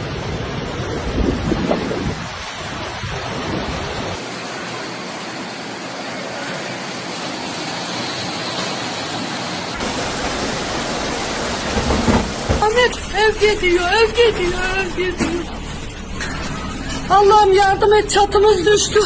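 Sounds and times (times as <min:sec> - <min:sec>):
storm wind: 0:00.0 - 0:04.2, 0:09.8 - 0:12.8
heavy rain: 0:00.0 - 0:13.2.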